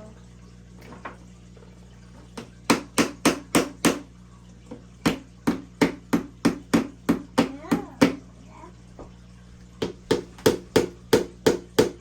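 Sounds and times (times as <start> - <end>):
tool knocking on wood: 5.0 - 8.2, 9.8 - 12.0.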